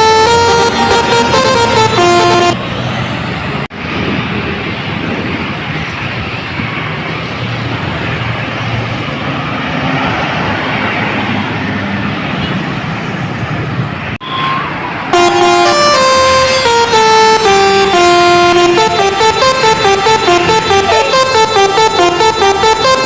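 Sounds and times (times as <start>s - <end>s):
bus air horn melody: 0.0s - 2.6s, 14.2s - 23.0s
traffic and engine noise: 0.0s - 23.0s.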